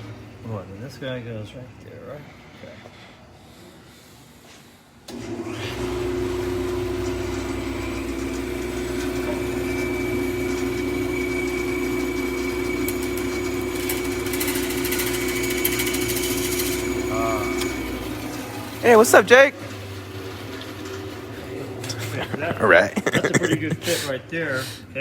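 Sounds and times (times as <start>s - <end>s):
bandsaw humming: 5.1s - 24.0s
bandsaw blade cutting wood: 5.2s - 19.3s.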